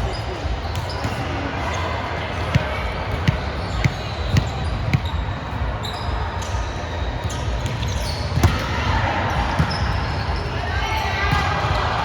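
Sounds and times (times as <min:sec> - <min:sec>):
shoe squeaks on court floor: 0:03.2 - 0:08.6.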